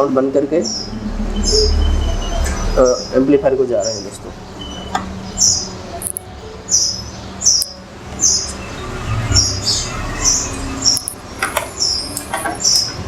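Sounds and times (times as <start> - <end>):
small bird chirping: 3.8 - 13.0
sharp clicks: 6.0 - 6.3, 10.9 - 12.4.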